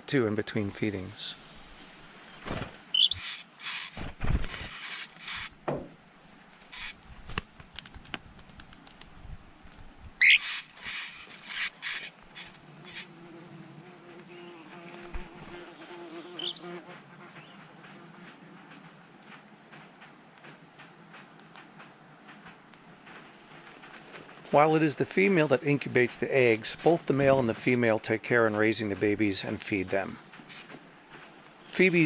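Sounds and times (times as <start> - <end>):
birds shrill high-pitched calls: 1.3 - 2.0, 2.9 - 5.6, 6.5 - 7.6, 10.2 - 13.6, 29.4 - 30.8.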